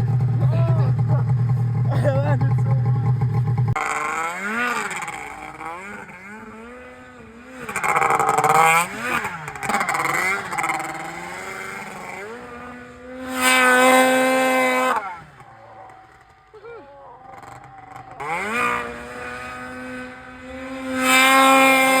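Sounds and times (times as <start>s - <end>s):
snowmobile engine revving: 0.0s - 22.0s.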